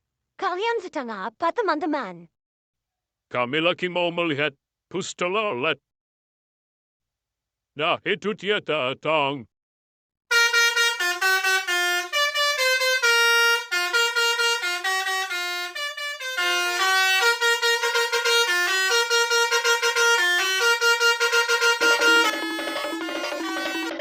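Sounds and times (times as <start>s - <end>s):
multi-tone bus horn tune: 10.3s - 24.0s.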